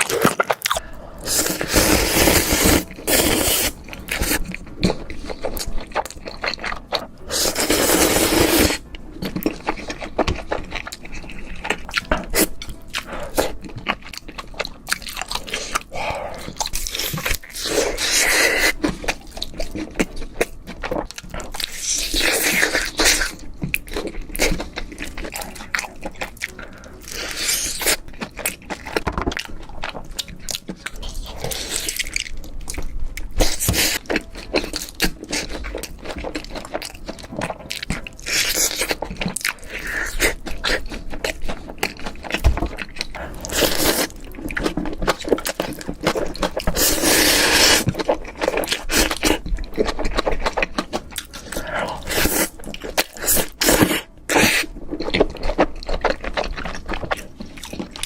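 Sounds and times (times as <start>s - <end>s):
crunching and chewing crispy food: 0.0s - 58.0s.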